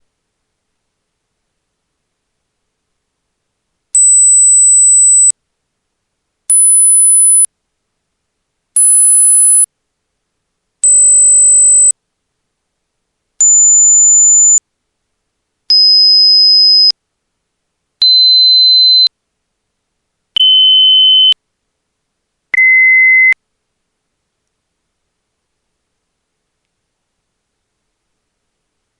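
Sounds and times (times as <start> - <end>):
pure test tone beeps: 4.0 - 5.3, 6.5 - 7.5, 8.8 - 9.7, 10.8 - 12.0, 13.4 - 14.6, 20.4 - 21.4.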